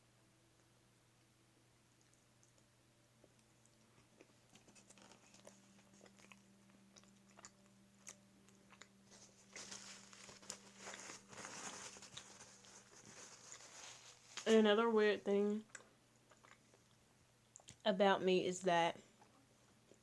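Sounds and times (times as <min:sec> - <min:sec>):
person chewing: 0:02.0 - 0:14.5, 0:15.6 - 0:17.8.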